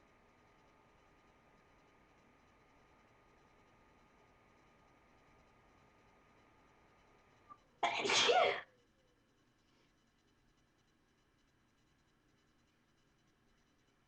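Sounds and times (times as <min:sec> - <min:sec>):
person sneezing: 0:07.8 - 0:08.6.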